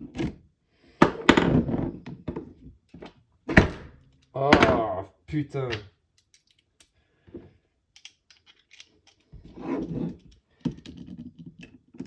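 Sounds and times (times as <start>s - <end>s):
small parts clicking and tapping: 5.7s - 7.0s, 7.9s - 9.5s, 10.1s - 12.0s.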